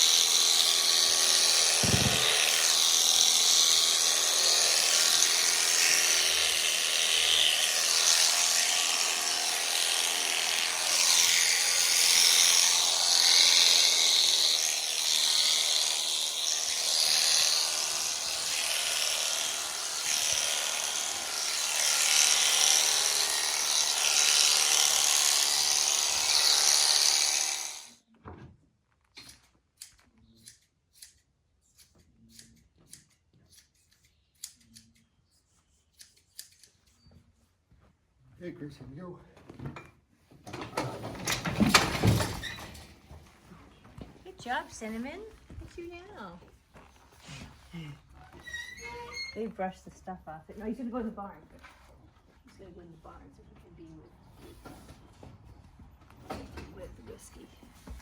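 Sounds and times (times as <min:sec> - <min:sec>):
electric shears buzzing: 0:00.0 - 0:28.0, 0:40.5 - 0:42.8.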